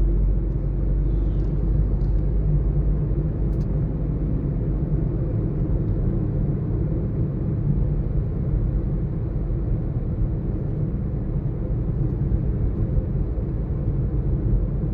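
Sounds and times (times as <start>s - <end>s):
vehicle engine rumble: 0.0s - 14.9s.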